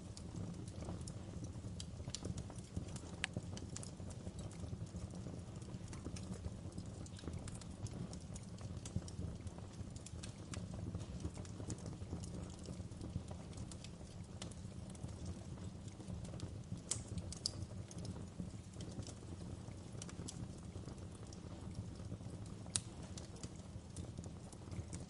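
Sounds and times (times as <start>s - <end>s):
low rumble of flames: 0.0s - 25.0s
burning logs snapping: 0.1s - 4.9s, 5.6s - 15.0s, 15.7s - 20.4s, 21.1s - 25.0s.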